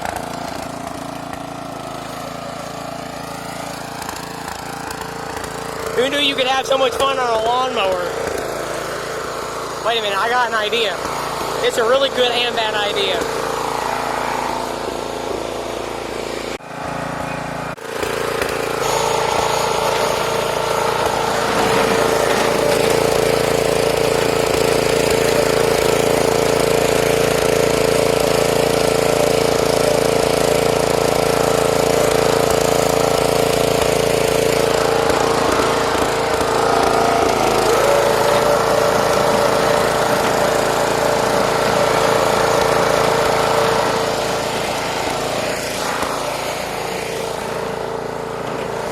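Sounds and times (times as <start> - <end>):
riding lawn mower engine running: 0.0 - 48.9.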